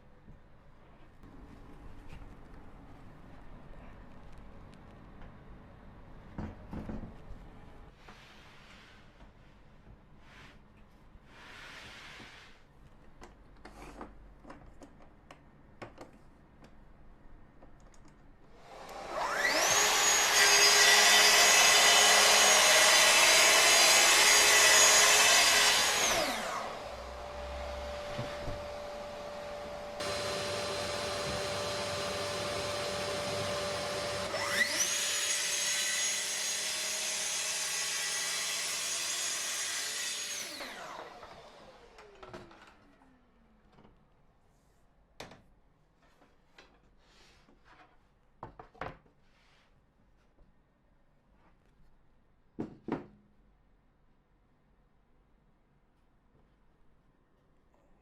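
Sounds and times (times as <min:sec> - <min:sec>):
circular saw cutting: 0:18.8 - 0:28.2, 0:28.9 - 0:42.2.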